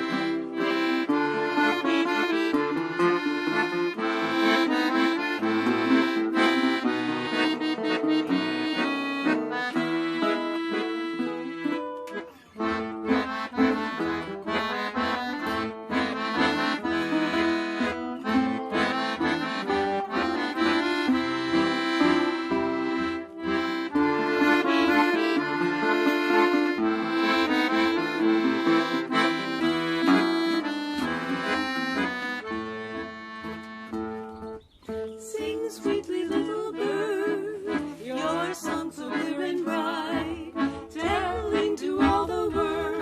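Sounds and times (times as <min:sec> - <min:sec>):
accordion melody: 0:00.0 - 0:43.0
rhythmic folk accompaniment: 0:00.0 - 0:43.0.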